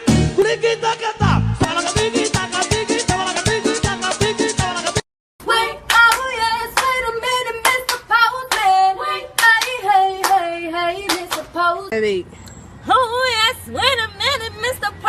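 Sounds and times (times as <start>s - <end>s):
song with drums: 0.0s - 0.4s, 1.6s - 5.0s
wordless singing: 0.0s - 11.9s
handclaps beat: 7.6s - 8.7s, 9.4s - 10.4s, 11.1s - 11.5s.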